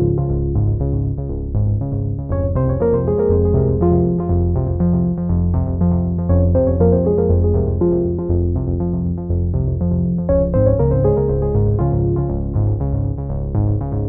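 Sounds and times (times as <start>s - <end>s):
steady bass line: 0.0s - 14.0s
synthesizer keyboard tune: 2.3s - 5.0s, 6.1s - 9.3s, 10.2s - 12.6s.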